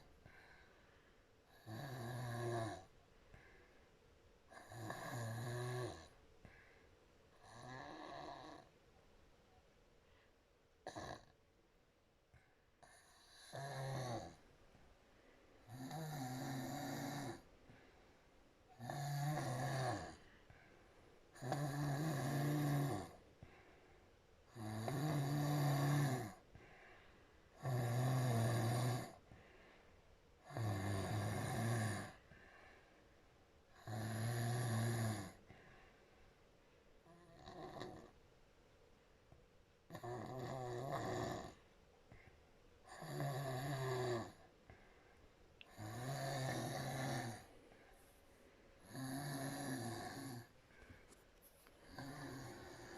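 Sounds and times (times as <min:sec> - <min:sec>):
woman snoring: 0:01.4 - 0:02.9, 0:04.5 - 0:06.2, 0:07.3 - 0:08.8, 0:10.8 - 0:11.4, 0:12.8 - 0:14.4, 0:15.6 - 0:17.5, 0:18.7 - 0:20.3, 0:21.3 - 0:23.2, 0:24.5 - 0:26.5, 0:27.5 - 0:29.2, 0:30.4 - 0:32.3, 0:33.7 - 0:35.5, 0:37.0 - 0:38.2, 0:39.9 - 0:41.6, 0:42.8 - 0:44.5, 0:45.6 - 0:47.5, 0:48.8 - 0:50.6, 0:51.8 - 0:52.9.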